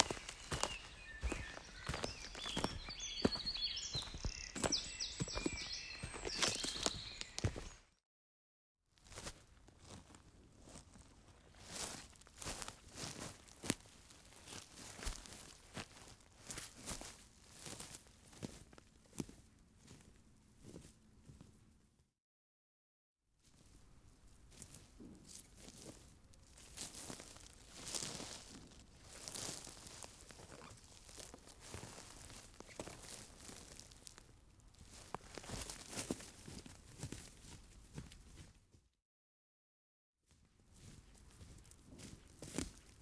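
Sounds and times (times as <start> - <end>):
footsteps crunching through leaves: 0.0 - 7.8, 11.5 - 18.6, 25.6 - 37.6.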